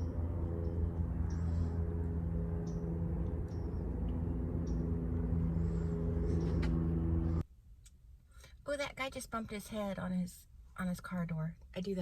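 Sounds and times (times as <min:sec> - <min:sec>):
vehicle engine idling: 0:00.0 - 0:07.4.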